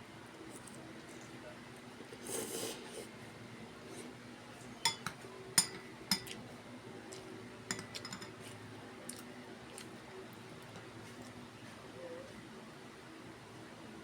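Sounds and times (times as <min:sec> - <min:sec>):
utensils clinking against dishes: 0:04.8 - 0:06.4, 0:07.7 - 0:08.5.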